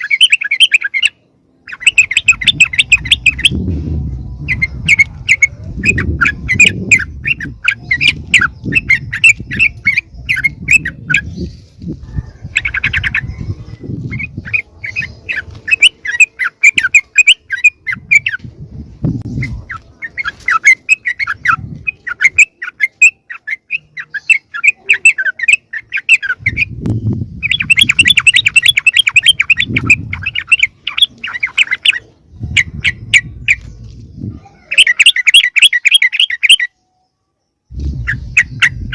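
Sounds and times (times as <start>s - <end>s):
bulbuls chattering: 0.0s - 36.7s
low rumble: 2.8s - 14.8s.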